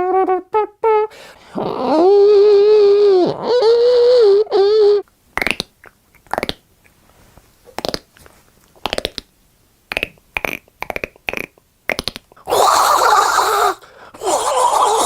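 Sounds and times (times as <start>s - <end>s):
man making vocal sound effects: 0.0s - 5.0s, 9.9s - 15.0s.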